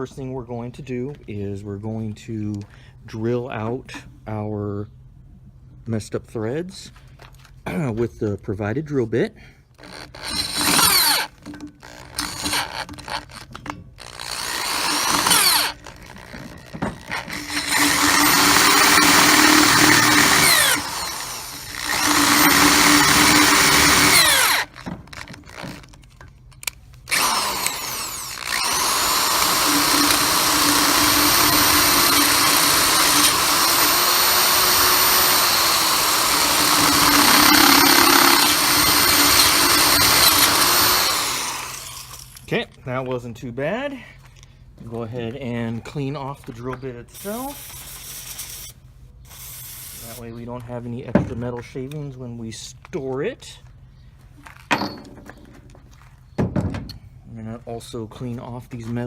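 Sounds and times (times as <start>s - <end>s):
electric drill drilling metal: 9.8s - 24.9s, 27.1s - 42.5s.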